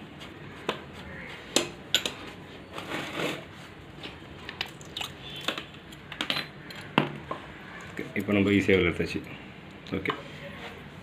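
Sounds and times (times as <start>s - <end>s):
clicks of tools and metal parts: 5.4s - 7.4s.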